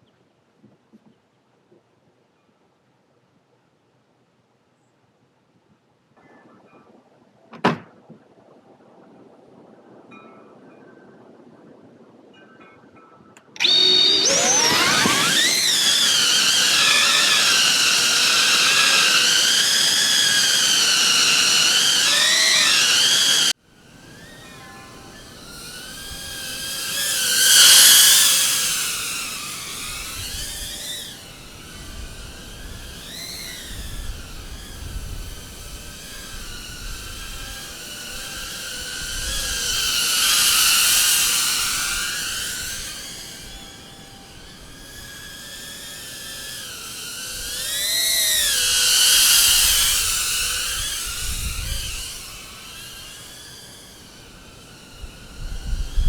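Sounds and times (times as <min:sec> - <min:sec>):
drone motors whining: 0:13.5 - 0:56.0.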